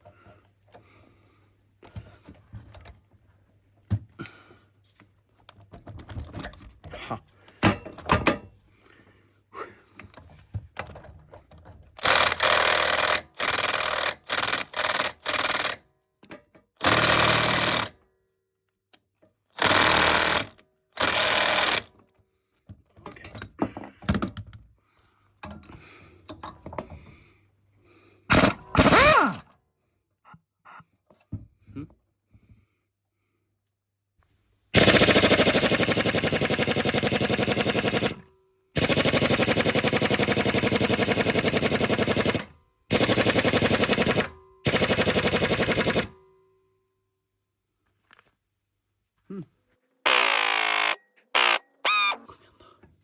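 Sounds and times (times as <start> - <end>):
power tool bursts undoing bolts: 11.9 - 15.8, 16.8 - 18.0, 19.6 - 21.9, 28.3 - 29.5, 34.8 - 46.2, 50.1 - 52.3.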